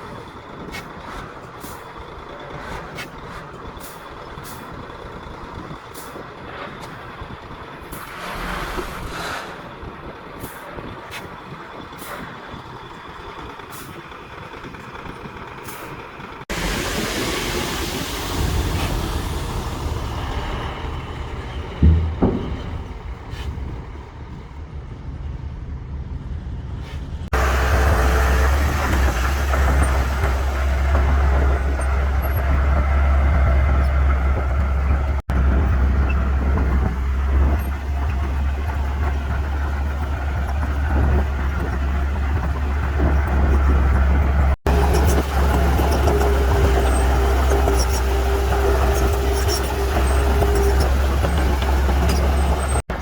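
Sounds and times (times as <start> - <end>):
heavy machinery diesel engines: 0.0 - 53.0
loud knock: 21.8 - 23.0
sharp metal clanks: 21.8 - 23.1.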